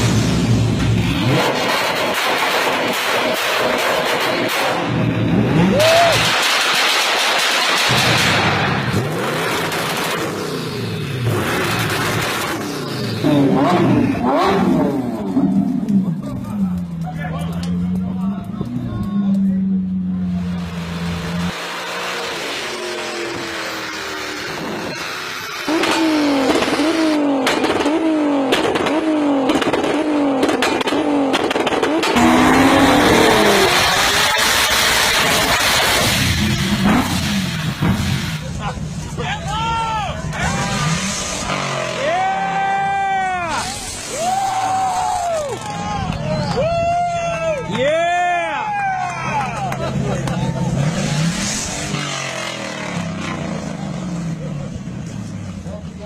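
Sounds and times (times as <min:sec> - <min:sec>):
vehicle exhaust revving: 0:00.0 - 0:39.3, 0:40.2 - 0:44.5, 0:49.4 - 0:56.0
exhaust pops and crackles: 0:05.8 - 0:10.5, 0:11.3 - 0:12.9, 0:15.5 - 0:20.8, 0:25.7 - 0:33.0.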